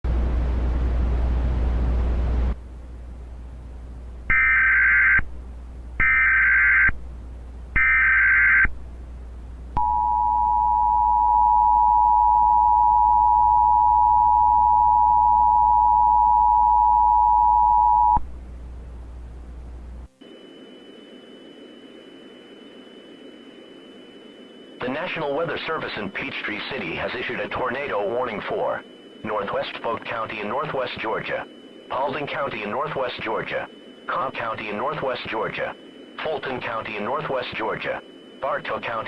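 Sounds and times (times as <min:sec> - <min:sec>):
low hum: 0:00.0 - 0:39.0
faint high whine and hiss: 0:00.1 - 0:39.0
warbling data bursts: 0:20.2 - 0:39.0.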